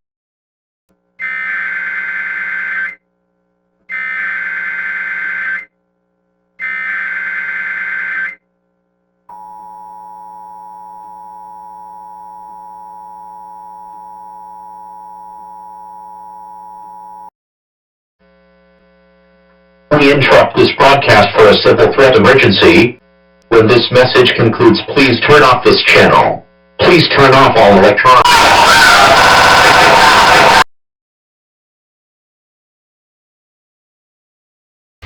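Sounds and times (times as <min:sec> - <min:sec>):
digital data bursts: 0:03.9 - 0:05.7, 0:06.6 - 0:08.4
two-tone attention signal: 0:09.3 - 0:17.3.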